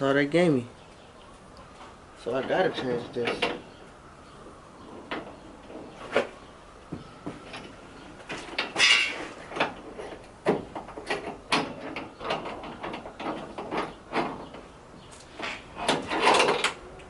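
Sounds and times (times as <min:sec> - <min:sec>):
rattling scrape: 0:08.4 - 0:10.2, 0:15.3 - 0:16.8.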